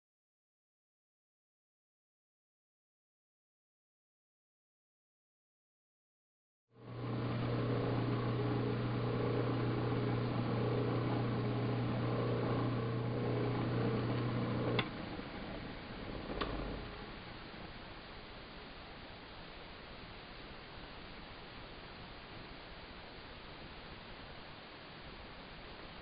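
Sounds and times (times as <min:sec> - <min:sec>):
lathe motor humming: 0:06.8 - 0:17.7.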